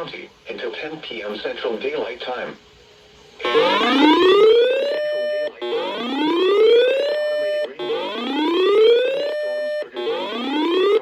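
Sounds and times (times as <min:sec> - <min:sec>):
electronic whooping alarm: 0:03.4 - 0:11.0.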